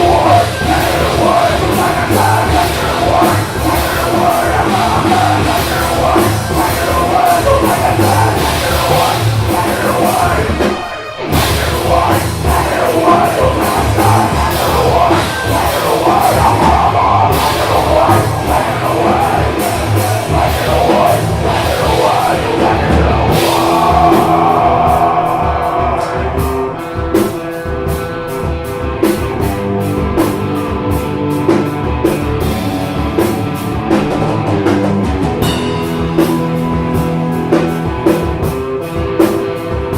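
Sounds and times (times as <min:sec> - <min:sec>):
yelled vocals: 0:00.0 - 0:31.4
heavy rock band playing: 0:00.0 - 0:39.9.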